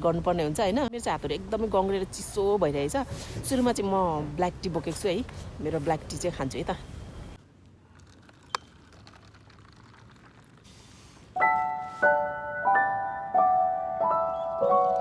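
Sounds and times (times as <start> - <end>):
slow piano music: 11.4 - 15.0.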